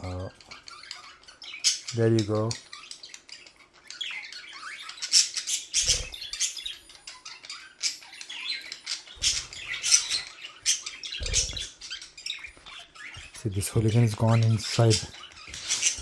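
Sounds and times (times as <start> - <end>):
budgie chirping: 0.0 - 16.0
wings flapping: 9.2 - 10.3, 11.2 - 11.9, 14.6 - 16.0.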